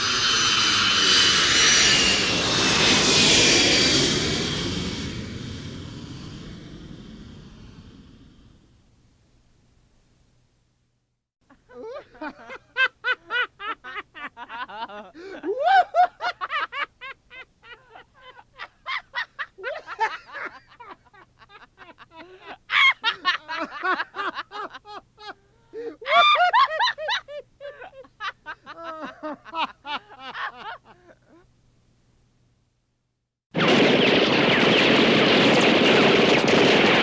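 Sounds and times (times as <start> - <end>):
person laughing: 11.5 - 31.5.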